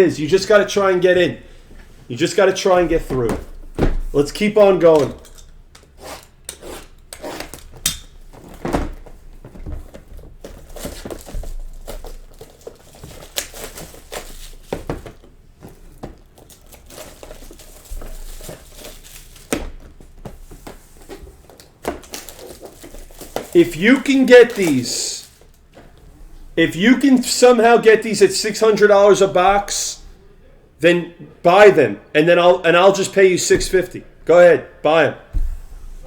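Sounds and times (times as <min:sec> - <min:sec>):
plastic wrap crinkling: 0:02.1 - 0:26.0
cardboard taps and thuds: 0:02.9 - 0:04.2, 0:08.3 - 0:16.6.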